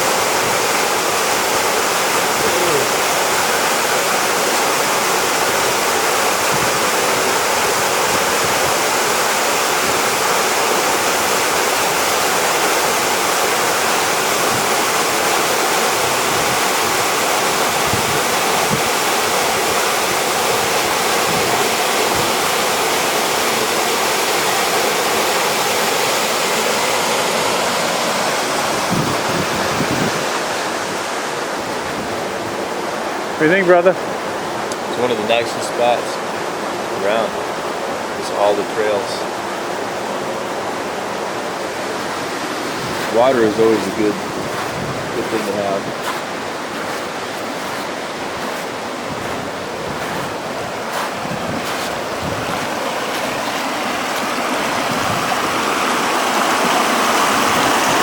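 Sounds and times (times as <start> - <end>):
waterfall pouring into pool: 0.0 - 28.7, 50.8 - 58.0.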